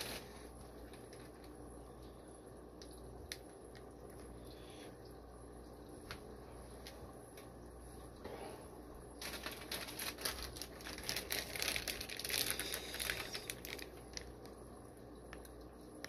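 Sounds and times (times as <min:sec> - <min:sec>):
plastic bags crinkling: 0:00.0 - 0:01.6, 0:09.2 - 0:14.6.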